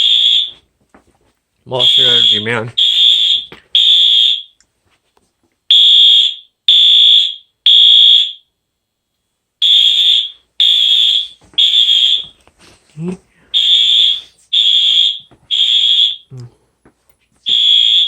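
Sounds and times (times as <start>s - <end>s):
fire alarm horn blasts: 0.0s - 0.6s, 1.8s - 4.6s, 5.7s - 8.5s, 9.6s - 12.4s, 13.5s - 16.3s, 17.5s - 18.0s.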